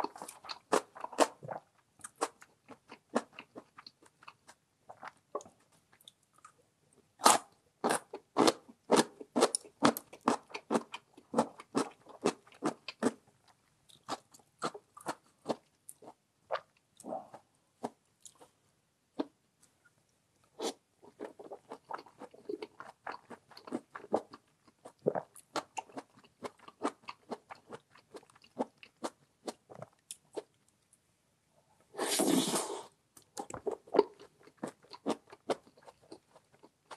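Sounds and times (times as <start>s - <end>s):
person chewing crunchy food: 21.1s - 30.5s.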